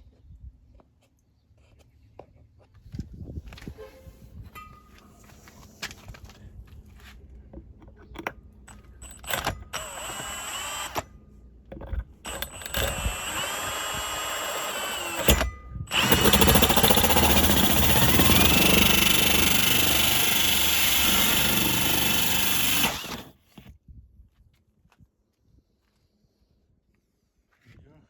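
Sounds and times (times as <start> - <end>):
power drill whining: 8.7 - 11.1, 11.9 - 23.7
hole saw grinding through metal: 9.0 - 11.0, 12.2 - 23.4.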